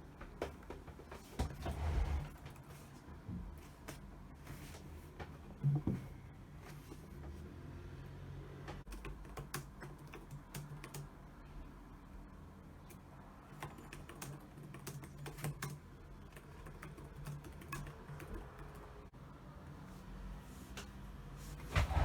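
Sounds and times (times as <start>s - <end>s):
typing on computer keyboard: 8.8s - 11.2s, 12.9s - 19.0s.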